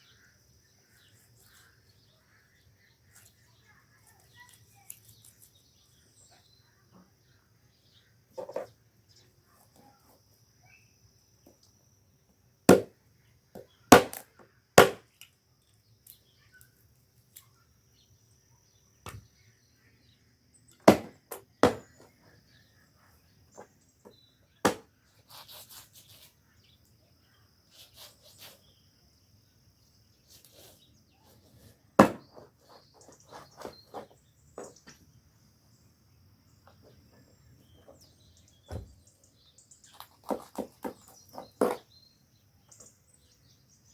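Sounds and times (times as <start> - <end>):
sharp chopping strikes: 14.8 - 15.0, 20.9 - 21.9, 24.6 - 24.9, 32.0 - 32.3.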